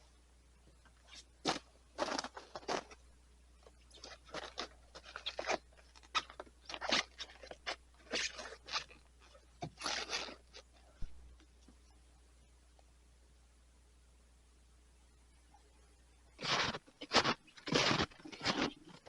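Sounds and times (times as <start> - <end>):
crunching and scraping: 0.8 - 3.0, 3.6 - 11.6, 16.4 - 19.0.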